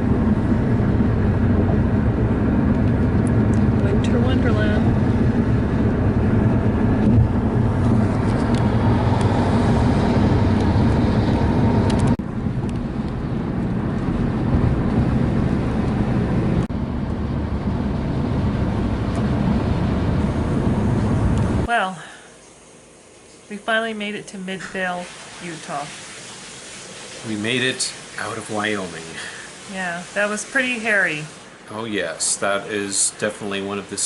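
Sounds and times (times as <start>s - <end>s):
car road and engine noise: 0.0s - 21.7s.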